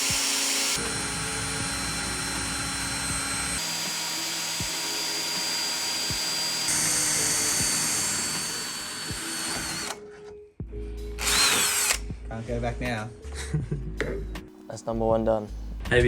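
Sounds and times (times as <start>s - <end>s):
power drill boring through metal: 0.0s - 10.0s, 11.2s - 12.0s.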